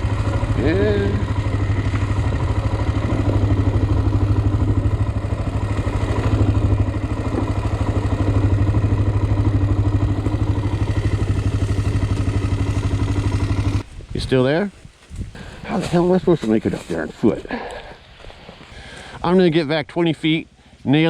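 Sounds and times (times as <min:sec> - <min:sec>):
atv engine idling: 0:00.0 - 0:13.9.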